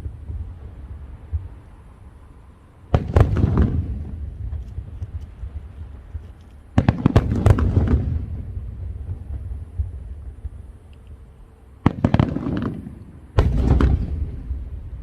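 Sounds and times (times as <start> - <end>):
fireworks bangs with rumbling echo: 2.9 - 10.9, 11.8 - 15.0.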